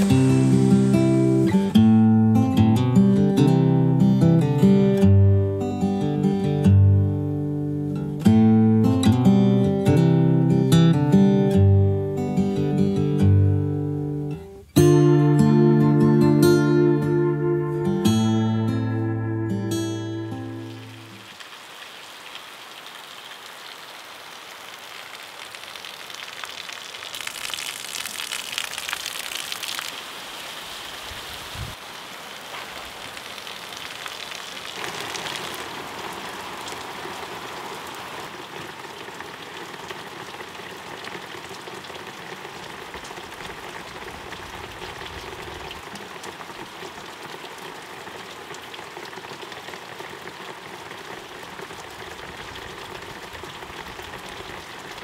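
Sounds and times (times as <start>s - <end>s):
rain pattering on surfaces: 0.0s - 2.3s, 20.5s - 55.0s.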